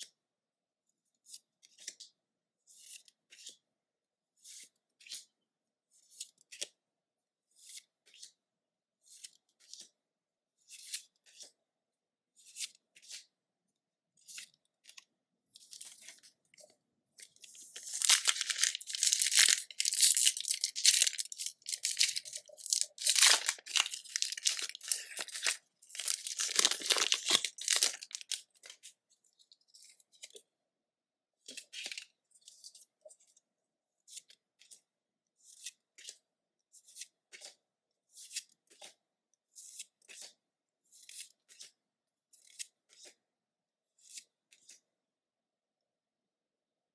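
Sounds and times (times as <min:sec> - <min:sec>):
rustling of cards being handled: 0:17.4 - 0:28.9
foil wrappers tearing and crinkling: 0:17.8 - 0:28.5.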